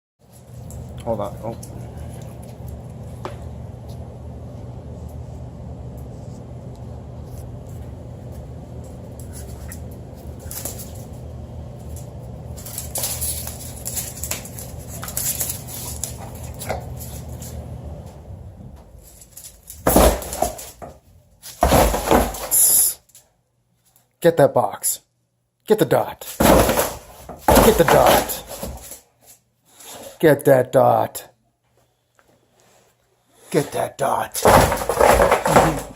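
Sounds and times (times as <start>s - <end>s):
low hum: 0.2s - 21.3s
loud bumps: 18.7s - 22.8s, 26.3s - 29.0s, 34.4s - 35.9s.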